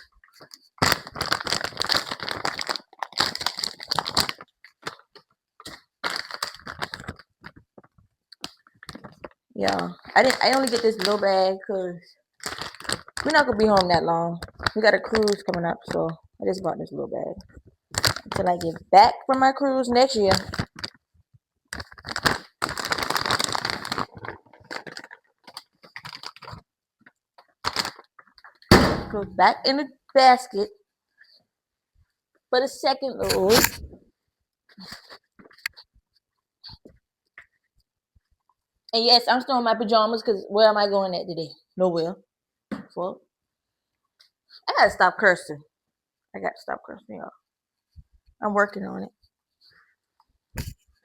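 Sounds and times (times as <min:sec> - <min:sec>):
plastic bag crinkling: 0:00.4 - 0:07.6, 0:08.4 - 0:11.6, 0:12.4 - 0:13.8, 0:17.9 - 0:18.8, 0:20.3 - 0:21.0, 0:21.8 - 0:26.6, 0:27.6 - 0:28.1, 0:33.2 - 0:33.8.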